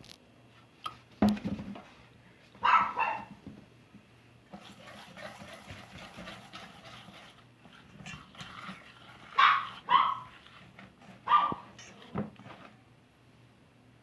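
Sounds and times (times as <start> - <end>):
dog barking: 2.6 - 3.3, 9.3 - 10.3, 11.2 - 11.7.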